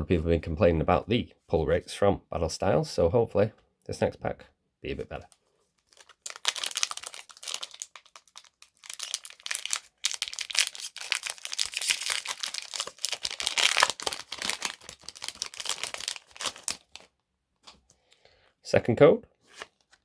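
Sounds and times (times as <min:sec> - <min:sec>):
foil wrapper crinkling and tearing: 0:05.8 - 0:17.1.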